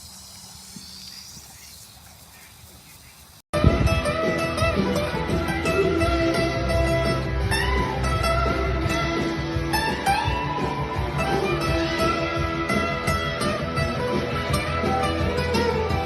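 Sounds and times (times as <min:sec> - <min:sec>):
plucked guitar music: 0:03.6 - 0:16.0.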